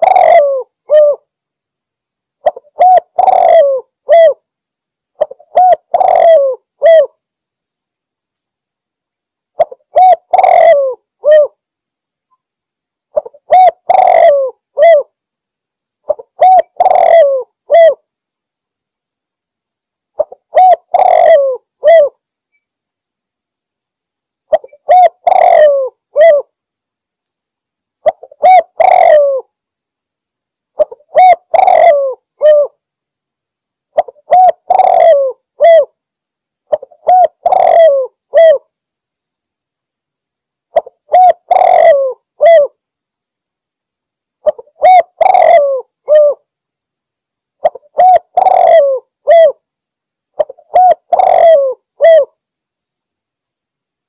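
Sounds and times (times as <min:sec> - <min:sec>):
dove cooing: 0:00.0 - 0:01.3, 0:02.4 - 0:04.4, 0:05.2 - 0:07.2, 0:09.6 - 0:11.6, 0:13.1 - 0:15.1, 0:16.1 - 0:18.0, 0:20.2 - 0:22.2, 0:24.5 - 0:26.5, 0:28.0 - 0:29.5, 0:30.8 - 0:32.8, 0:34.0 - 0:36.0, 0:36.7 - 0:38.7, 0:40.8 - 0:42.8, 0:44.4 - 0:46.4, 0:47.6 - 0:49.6, 0:50.4 - 0:52.4.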